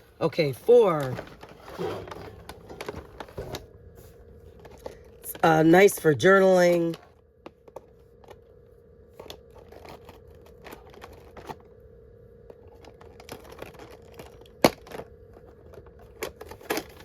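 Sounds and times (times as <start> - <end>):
packaging rustling: 0.9 - 5.2.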